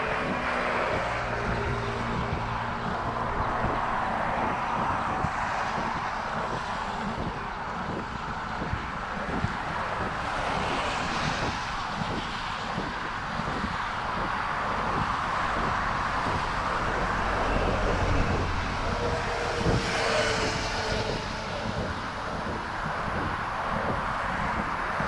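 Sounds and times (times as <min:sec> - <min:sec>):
vehicles passing: 0:00.0 - 0:25.0.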